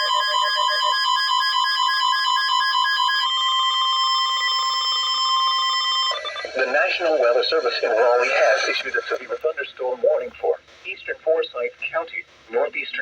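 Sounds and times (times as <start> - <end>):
pulsing beeping alarm tone: 0.0 - 9.2
steady alert tone: 4.5 - 9.2.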